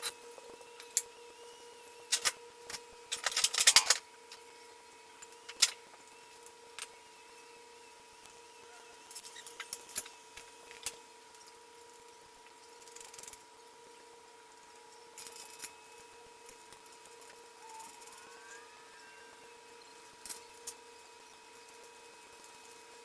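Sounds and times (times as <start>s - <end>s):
metal tools clinking: 3.1s - 4.0s.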